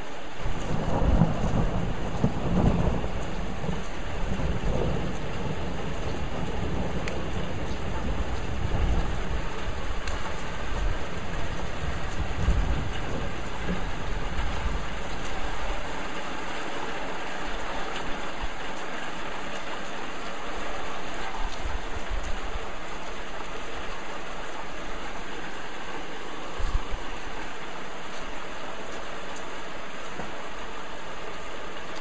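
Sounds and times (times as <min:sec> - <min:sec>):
heavy rain hissing: 0:00.0 - 0:32.0
thunder rumbling: 0:00.4 - 0:16.0.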